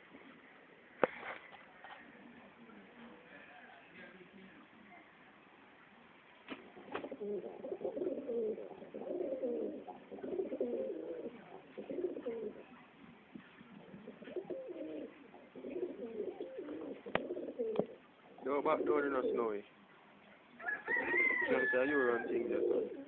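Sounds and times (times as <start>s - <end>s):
birds cooing: 6.7s - 12.8s, 13.4s - 23.0s.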